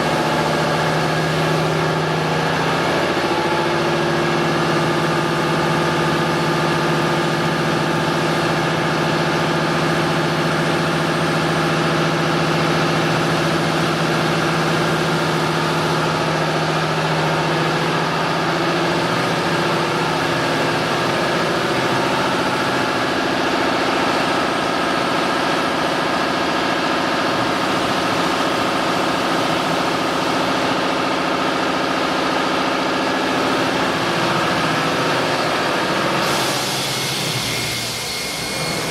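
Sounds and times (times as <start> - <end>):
wood router machine drone: 33.3 - 38.9.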